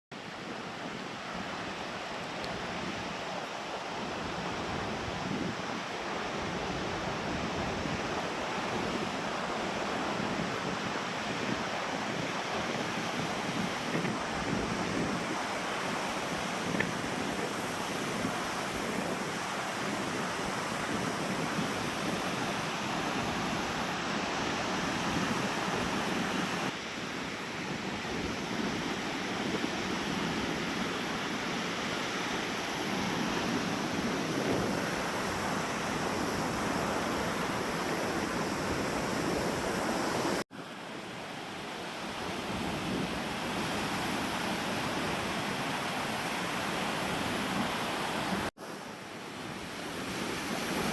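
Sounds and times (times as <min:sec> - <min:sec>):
waves washing onto beach: 0:00.2 - 0:50.9
wind buffeting microphone: 0:04.0 - 0:40.4.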